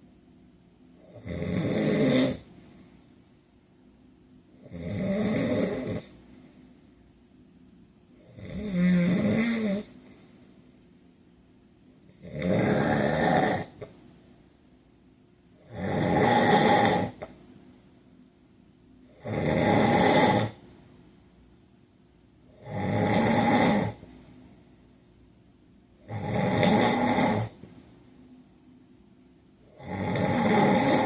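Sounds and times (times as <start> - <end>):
man snoring loudly: 1.0 - 2.5, 4.6 - 6.2, 8.2 - 10.0, 12.1 - 13.9, 15.6 - 17.2, 19.1 - 20.6, 22.6 - 24.0, 26.0 - 27.6, 29.7 - 31.0.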